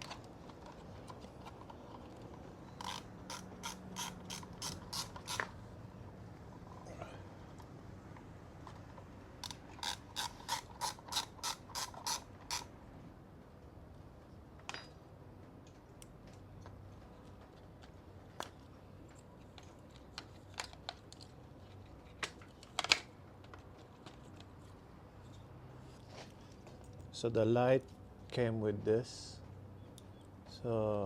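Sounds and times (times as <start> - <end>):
sharp mechanical clicks: 2.8 - 5.6.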